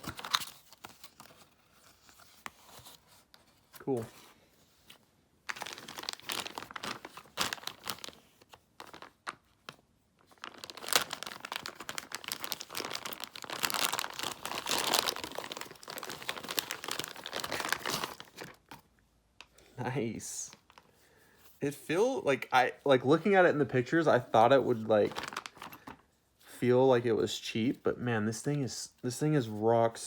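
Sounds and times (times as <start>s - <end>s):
packaging crinkling: 5.5s - 18.8s, 24.7s - 26.0s.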